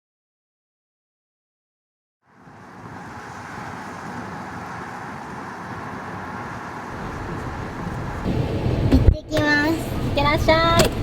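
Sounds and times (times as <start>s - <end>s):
traffic rumble and hiss: 2.2s - 11.0s.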